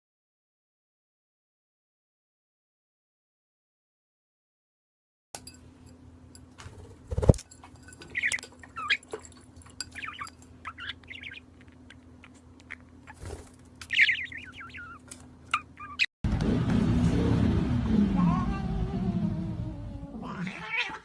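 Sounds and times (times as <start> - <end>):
steady low hum: 5.4 - 20.5
small bird chirping: 8.0 - 9.1, 9.8 - 16.1.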